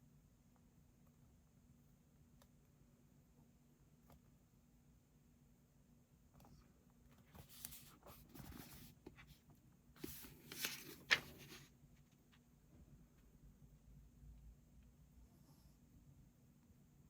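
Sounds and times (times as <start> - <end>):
book page rustling: 7.2 - 9.4, 10.0 - 12.3.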